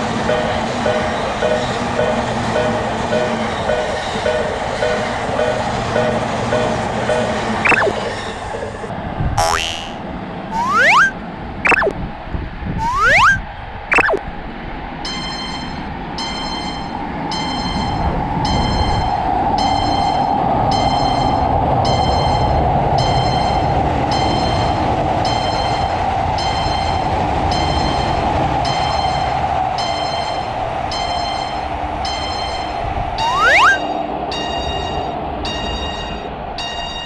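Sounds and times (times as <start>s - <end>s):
railroad crossing bell ringing: 33.8s - 37.0s.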